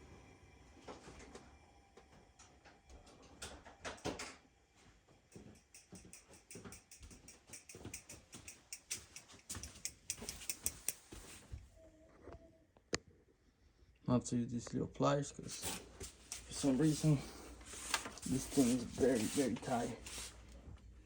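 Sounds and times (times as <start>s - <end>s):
pliers clicking and tapping: 5.3s - 11.4s.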